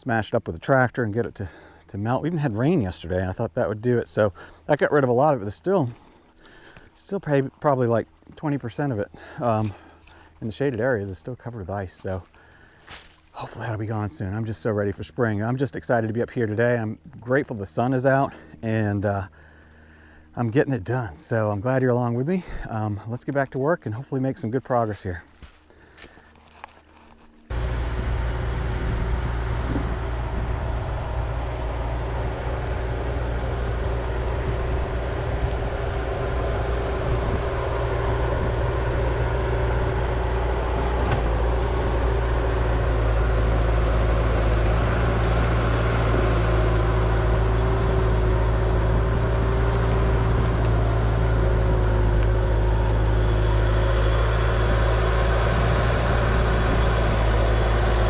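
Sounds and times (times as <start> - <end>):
diesel engine running: 0.0 - 58.0
thin steady whine: 26.4 - 43.3.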